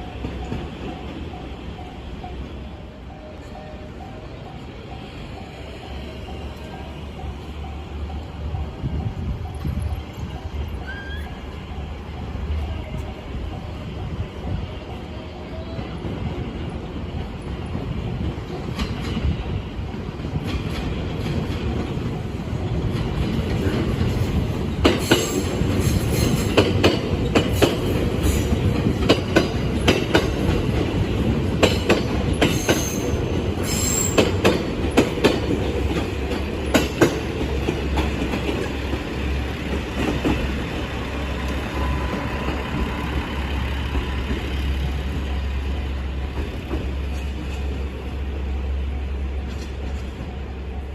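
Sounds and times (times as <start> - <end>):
train rumble: 0.0 - 50.9
high wheel squeal: 10.2 - 11.6, 32.5 - 34.2, 41.1 - 44.7.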